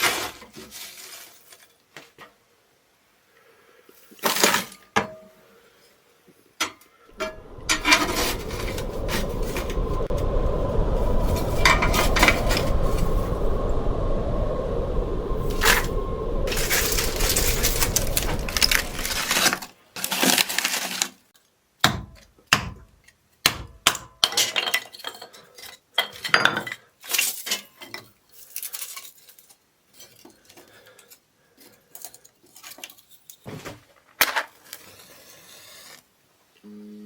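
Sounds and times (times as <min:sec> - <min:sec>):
steady rushing noise: 0:07.1 - 0:19.7.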